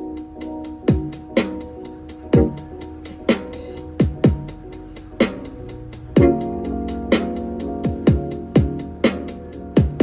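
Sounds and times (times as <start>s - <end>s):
hi-hat: 0.0s - 10.0s
deep kick drum hits: 2.3s - 2.6s.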